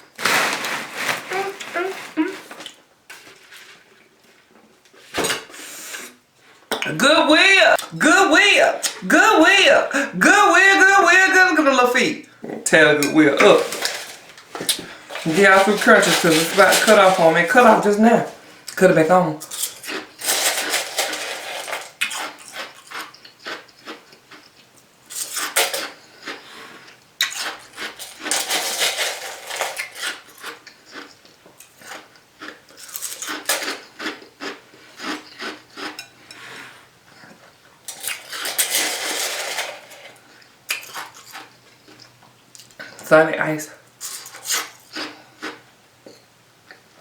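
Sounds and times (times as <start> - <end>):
ice being chewed: 19.4 - 36.5, 44.0 - 45.6.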